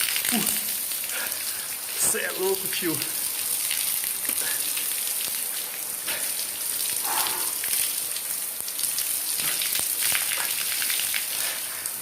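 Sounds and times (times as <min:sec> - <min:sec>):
shower water spraying: 0:00.0 - 0:12.0.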